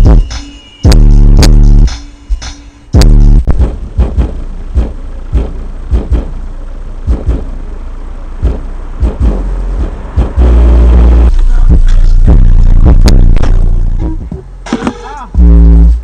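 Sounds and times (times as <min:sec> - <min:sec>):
sustained deep bass note: 0:00.0 - 0:01.9, 0:02.9 - 0:14.6, 0:15.4 - 0:16.0
kick drum thumps: 0:03.0 - 0:06.4, 0:07.0 - 0:07.5, 0:08.4 - 0:10.6, 0:11.7 - 0:15.7.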